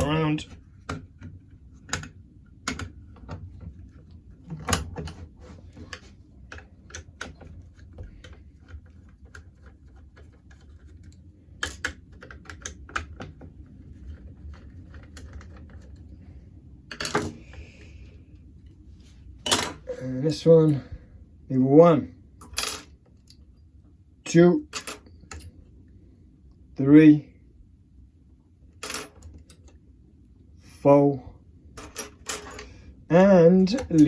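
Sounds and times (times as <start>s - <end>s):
steady low hum: 0.0s - 34.0s
metal lock parts clinking: 31.8s - 32.7s.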